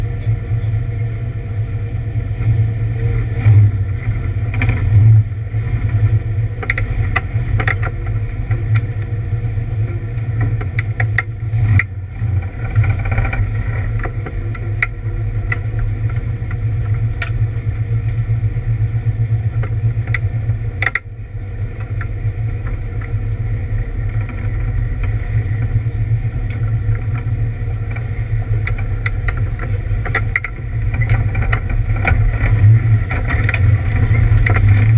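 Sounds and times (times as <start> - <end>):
race car engine droning: 0.0 - 34.9
clicks and rattles: 6.6 - 9.1, 26.4 - 34.9.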